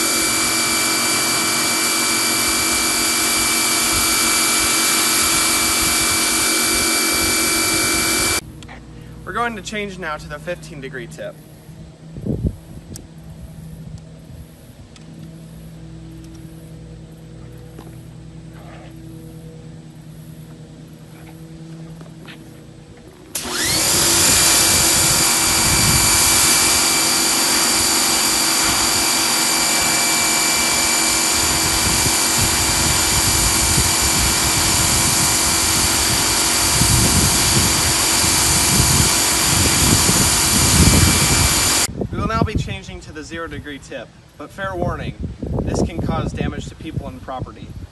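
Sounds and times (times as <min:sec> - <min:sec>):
water jet hissing: 0:00.0 - 0:08.4, 0:23.4 - 0:41.9
pressure washer motor whine: 0:00.0 - 0:42.0
faint hum: 0:00.0 - 0:42.1.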